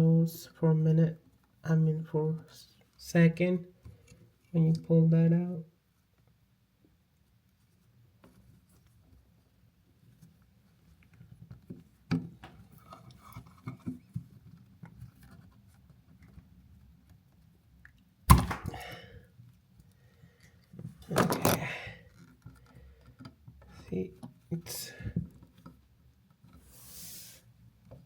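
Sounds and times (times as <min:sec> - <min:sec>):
faint clicks and scrapes: 0:07.1 - 0:18.1, 0:19.8 - 0:24.5, 0:25.2 - 0:26.7
sharp knock with rattle: 0:18.3 - 0:18.8.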